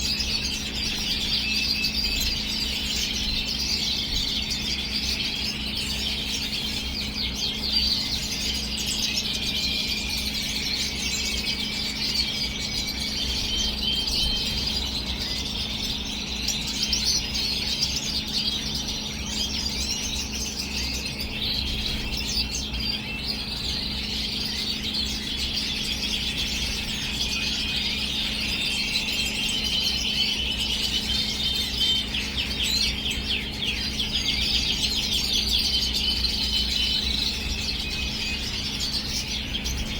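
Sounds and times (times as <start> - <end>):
finches chirping and twittering: 0.0 - 39.9
steady low hum: 0.0 - 39.9.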